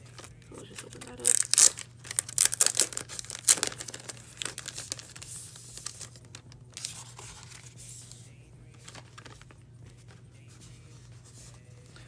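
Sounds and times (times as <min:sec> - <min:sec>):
packaging crinkling and tearing: 0:00.0 - 0:07.7, 0:08.8 - 0:09.5.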